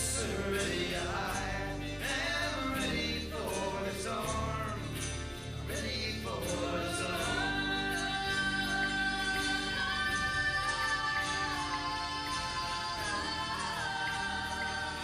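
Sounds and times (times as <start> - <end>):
person singing: 0.0 - 15.0.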